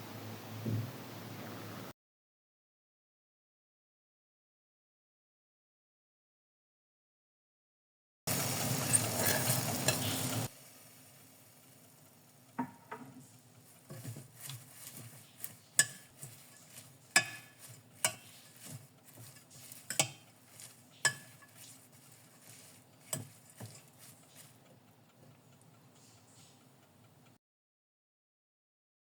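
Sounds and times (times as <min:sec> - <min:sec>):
spoon scraping frying pan: 0:08.3 - 0:10.5, 0:12.6 - 0:24.8.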